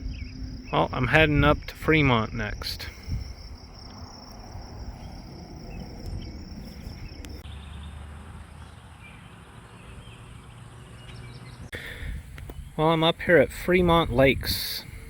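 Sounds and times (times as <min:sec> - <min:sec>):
insects trilling: 0:00.0 - 0:07.4
distant highway traffic rumble: 0:00.0 - 0:15.0
wind: 0:00.0 - 0:15.0.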